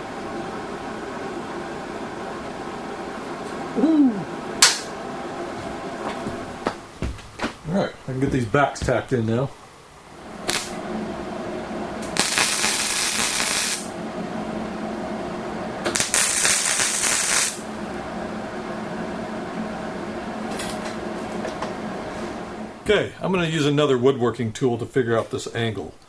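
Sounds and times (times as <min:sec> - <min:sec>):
steady low hum: 0:00.0 - 0:26.0
welding arc crackling: 0:10.2 - 0:10.9, 0:12.0 - 0:14.0, 0:15.9 - 0:17.8.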